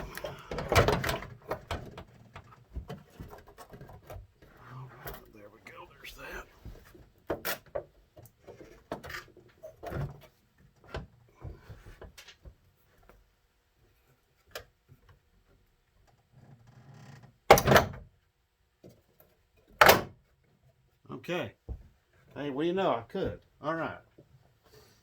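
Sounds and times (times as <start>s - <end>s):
plastic parts knocking and clicking: 0.0s - 4.3s.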